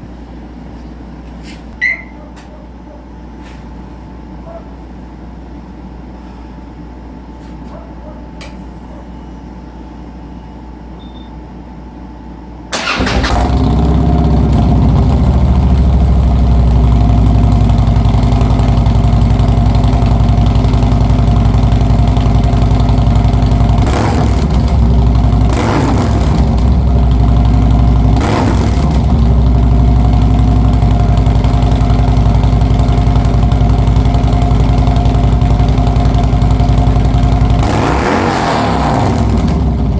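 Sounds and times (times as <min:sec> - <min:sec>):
motorcycle throttle blips: 0:01.8 - 0:02.2
motorcycle engine starting and idling: 0:12.7 - 0:39.9.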